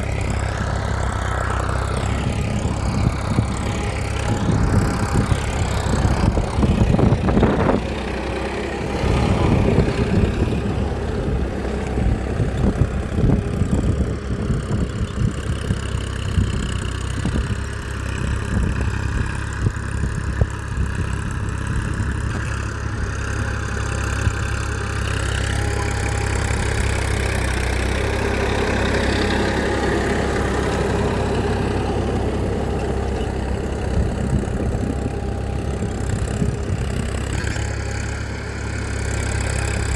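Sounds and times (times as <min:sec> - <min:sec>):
small engine running: 0:00.0 - 0:39.9.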